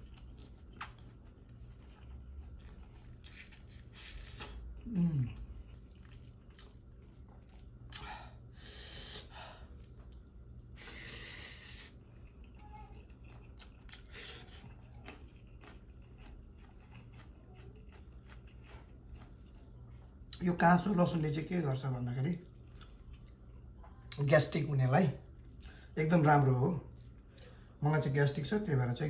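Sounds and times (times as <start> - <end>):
person chewing food: 0.0 - 20.4, 22.4 - 24.2, 26.9 - 27.8.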